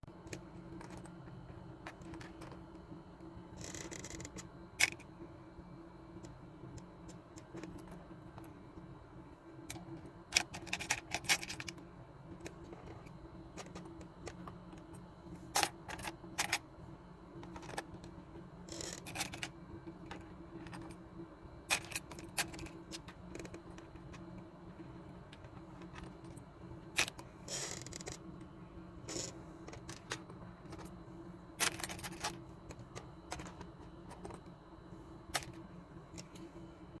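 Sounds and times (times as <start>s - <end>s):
toy motor whirring: 3.5s - 5.0s, 18.7s - 19.5s, 27.0s - 28.2s, 29.0s - 30.1s.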